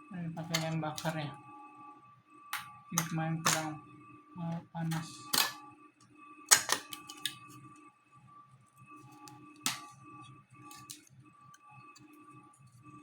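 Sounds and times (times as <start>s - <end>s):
faint steady hum: 0.0s - 13.0s
plastic clicks and snaps: 6.5s - 7.5s.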